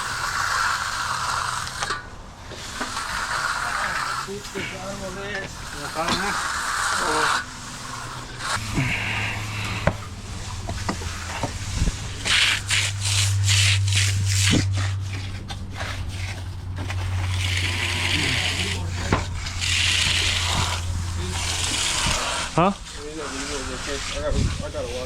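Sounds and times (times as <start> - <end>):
push broom scraping concrete: 0.0 - 25.0
steady low hum: 4.9 - 23.0.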